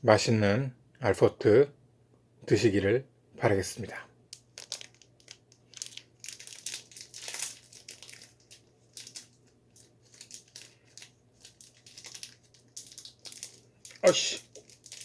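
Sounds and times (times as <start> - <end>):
plastic wrappers crinkling: 4.3 - 15.0.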